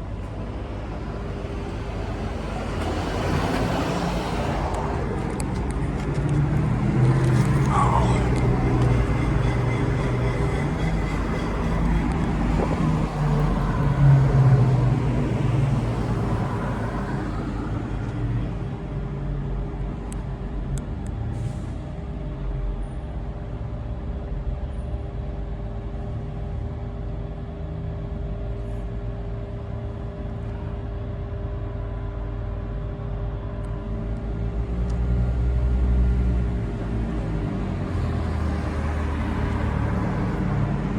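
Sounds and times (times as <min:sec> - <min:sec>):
motor vehicle engine humming: 0:00.0 - 0:18.5, 0:31.5 - 0:40.9.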